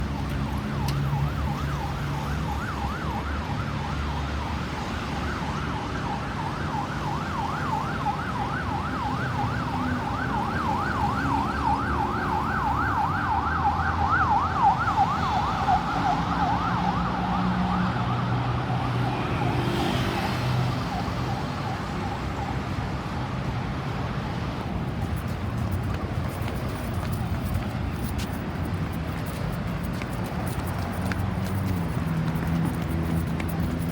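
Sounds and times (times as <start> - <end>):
engine and traffic noise: 0.0 - 33.9
ambulance siren yelping: 0.2 - 23.4.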